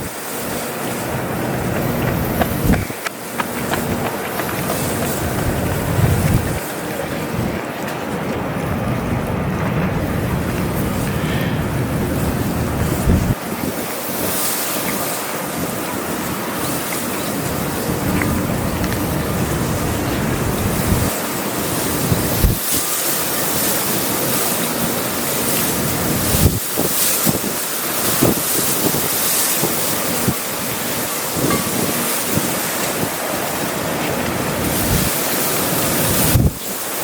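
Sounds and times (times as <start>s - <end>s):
storm wind buffeting microphone: 0.0s - 37.0s.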